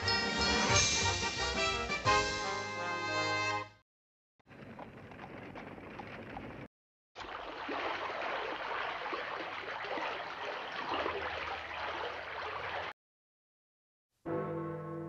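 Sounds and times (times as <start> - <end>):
running water rushing: 7.2 - 12.9.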